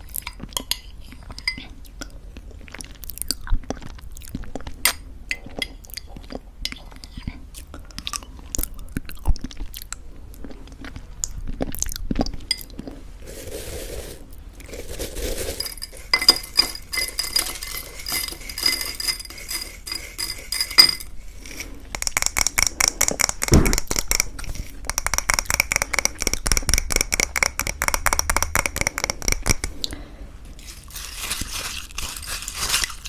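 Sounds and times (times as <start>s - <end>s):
spoon clinking against bowl: 15.6s - 23.3s.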